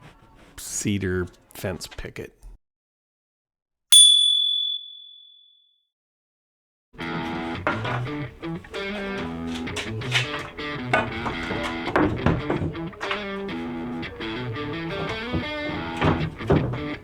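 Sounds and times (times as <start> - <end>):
guitar background music: 7.0 - 17.0.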